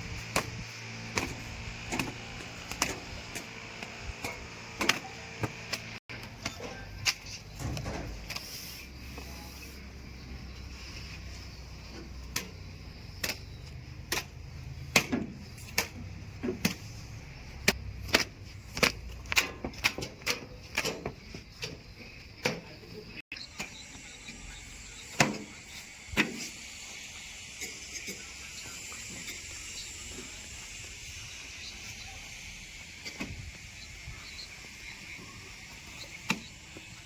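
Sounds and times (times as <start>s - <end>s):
low machine rumble: 0.0s - 19.3s.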